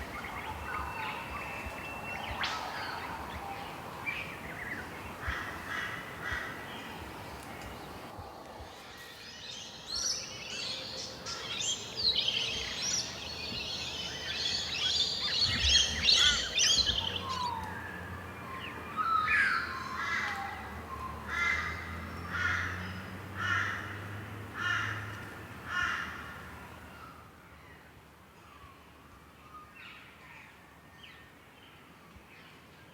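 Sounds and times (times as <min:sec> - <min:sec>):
birds chirping and whistling: 0:09.0 - 0:21.2.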